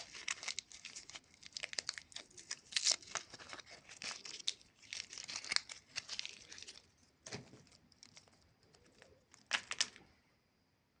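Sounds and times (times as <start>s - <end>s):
candy wrapper crinkling: 0.0s - 10.1s.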